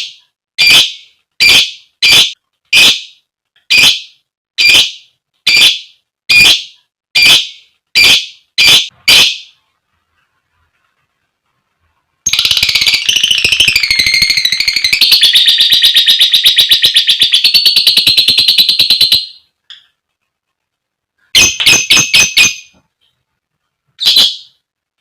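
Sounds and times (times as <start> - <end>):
bird sharp shrill calls: 12.3 - 19.4
lovebird chattering trill: 12.3 - 19.4.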